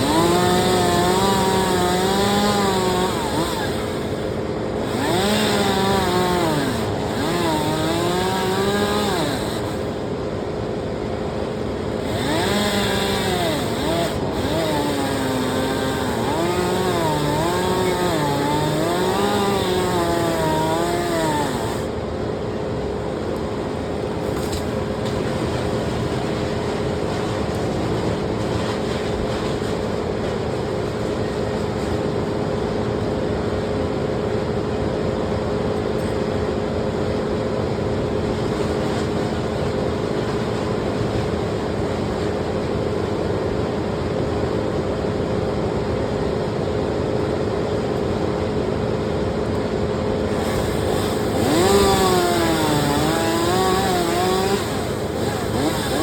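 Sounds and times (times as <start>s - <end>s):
chainsaw engine running: 0.0s - 22.0s, 50.2s - 56.0s.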